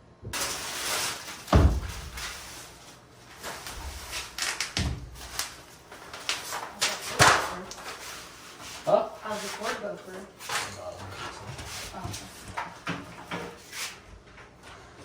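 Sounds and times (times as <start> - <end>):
air conditioner scraping: 0.3 - 15.0
heavy thumps: 1.5 - 2.4.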